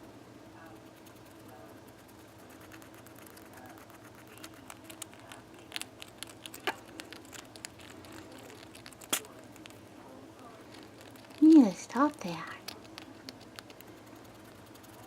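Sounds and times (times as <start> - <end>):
rat teeth grinding clicks: 2.6 - 9.8, 10.7 - 11.4, 12.6 - 15.0.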